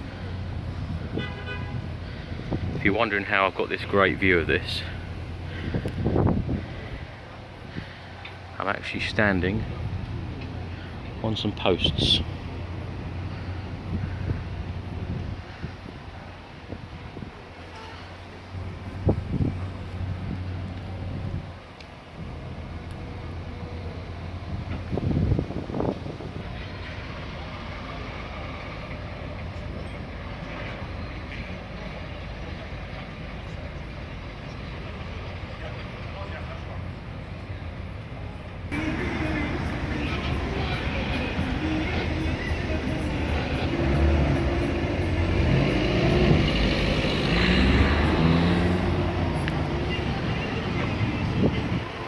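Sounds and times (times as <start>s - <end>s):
wind buffeting microphone: 0.0s - 3.1s, 4.6s - 8.0s, 9.6s - 17.5s, 18.6s - 21.6s, 24.3s - 26.6s, 38.7s - 52.0s
city street traffic rumble: 0.0s - 52.0s.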